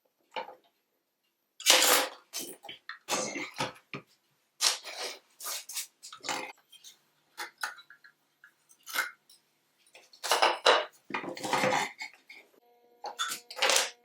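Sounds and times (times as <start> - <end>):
metal parts and glass clattering: 9.9 - 12.1, 13.0 - 14.0.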